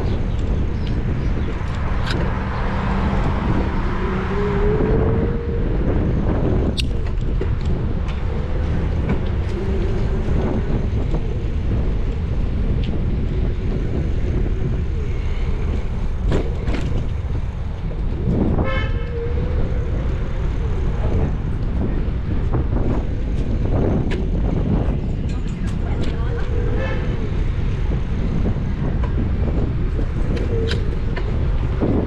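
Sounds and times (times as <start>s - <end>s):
car road rumble: 0.0s - 32.0s
vehicle horn toot: 18.6s - 19.4s.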